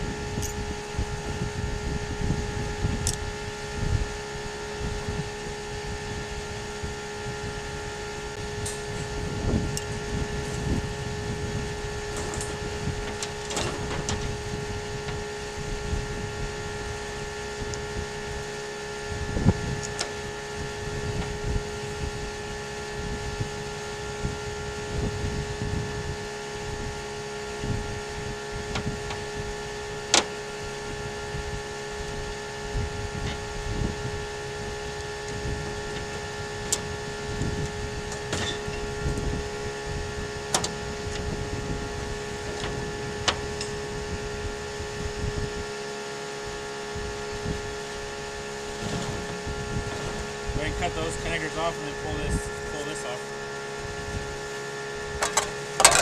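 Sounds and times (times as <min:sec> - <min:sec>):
low rumbling: 0:00.0 - 0:56.0
steady mechanical hum: 0:00.0 - 0:56.0
sharp clicks and knocks: 0:55.2 - 0:56.0.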